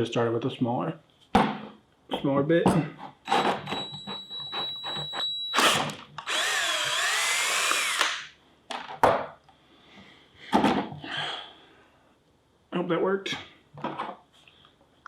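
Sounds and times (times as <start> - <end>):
power drill boring through plastic: 3.3 - 8.3.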